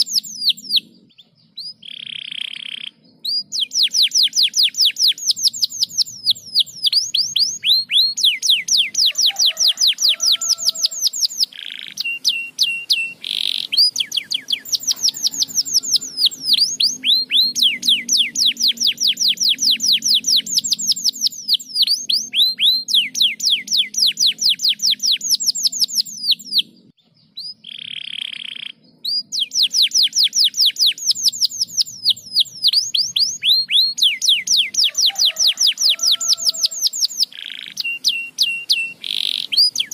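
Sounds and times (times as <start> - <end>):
canary singing trills: 0.0 - 39.9.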